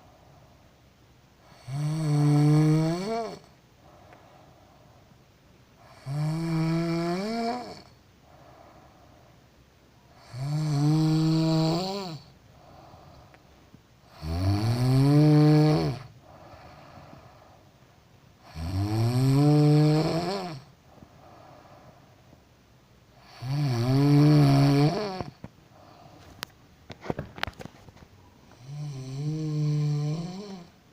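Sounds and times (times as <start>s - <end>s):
woman snoring loudly: 1.4s - 3.5s, 5.8s - 8.7s, 10.2s - 12.3s, 14.1s - 16.9s, 18.4s - 20.7s, 23.2s - 26.0s, 28.5s - 30.8s
soft breathing: 3.5s - 5.9s, 7.9s - 10.2s, 12.2s - 13.9s, 16.1s - 18.1s, 20.7s - 22.5s, 25.2s - 29.4s.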